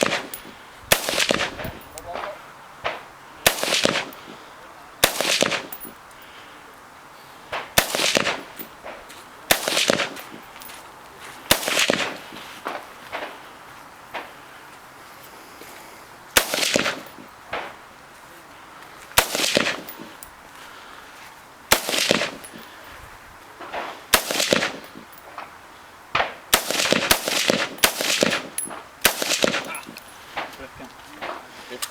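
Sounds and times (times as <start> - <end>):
rifle shots with echo: 0.0 - 6.0, 7.5 - 10.8, 11.5 - 13.4, 16.4 - 17.9, 19.2 - 20.3, 21.7 - 22.9, 23.6 - 30.6.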